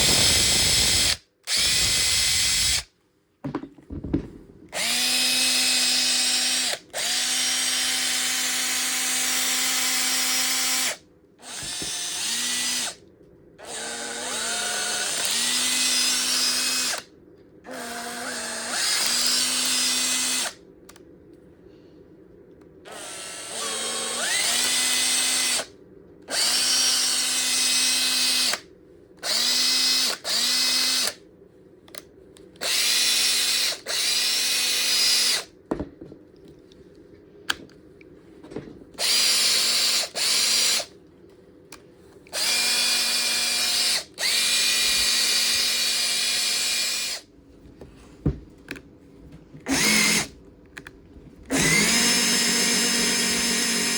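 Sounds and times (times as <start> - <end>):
cordless drill motor whining: 0.0 - 2.9, 4.7 - 13.0, 13.6 - 17.1, 17.7 - 20.6, 22.9 - 25.7, 26.3 - 28.6, 29.2 - 31.2, 32.6 - 35.5, 39.0 - 40.9, 42.3 - 47.3, 49.6 - 50.3, 51.5 - 53.9.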